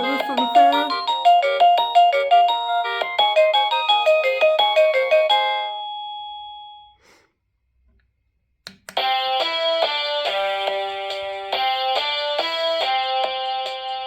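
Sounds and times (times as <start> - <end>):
electronic doorbell chime tune: 0.0 - 7.0.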